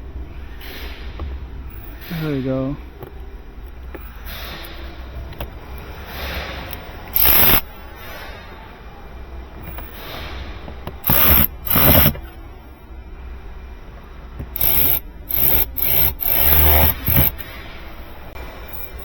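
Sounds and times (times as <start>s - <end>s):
cordless drill driving screws: 7.2s - 7.6s, 11.0s - 12.2s, 14.6s - 17.4s.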